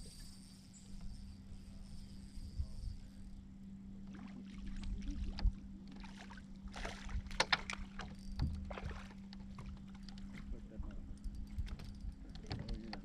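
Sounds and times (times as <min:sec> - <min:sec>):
steady low hum: 0:00.0 - 0:13.0
water splashing: 0:04.0 - 0:10.4
knocks against a boat: 0:07.0 - 0:10.5, 0:11.6 - 0:13.0.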